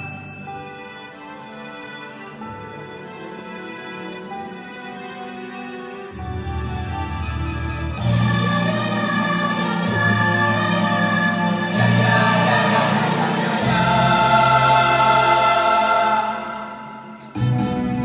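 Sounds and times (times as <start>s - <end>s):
choir singing sustained chords: 6.1s - 18.0s.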